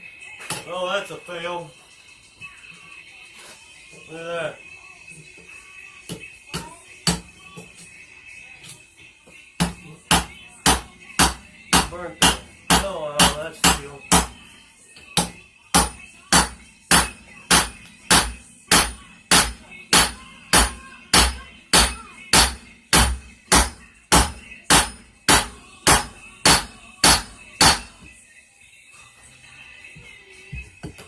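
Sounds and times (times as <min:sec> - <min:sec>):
hammer striking metal on anvil: 0:09.6 - 0:14.4, 0:15.2 - 0:28.0.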